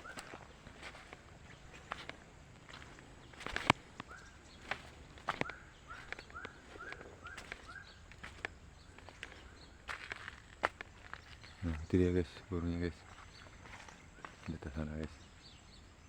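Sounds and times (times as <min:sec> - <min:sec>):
footsteps: 0:00.0 - 0:14.7
bird calling short notes: 0:03.5 - 0:08.5.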